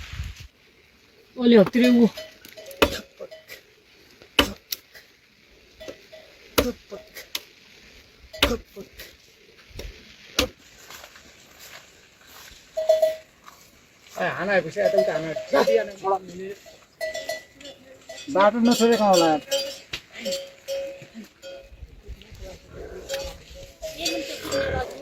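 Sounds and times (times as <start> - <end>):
chopping strikes: 2.7 - 3.2, 4.4 - 4.8, 6.6 - 7.4, 8.4 - 8.8, 9.8 - 10.6.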